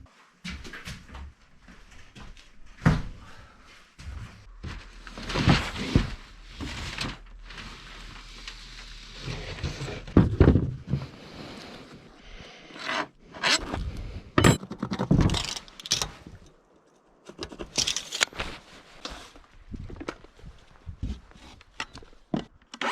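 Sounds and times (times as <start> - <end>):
tools scraping and knocking: 12.7 - 13.8, 14.4 - 16.4, 17.3 - 18.3.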